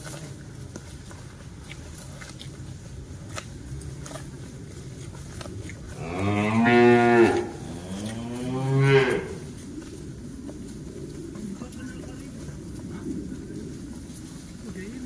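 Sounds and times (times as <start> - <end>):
cow mooing: 6.0 - 9.5.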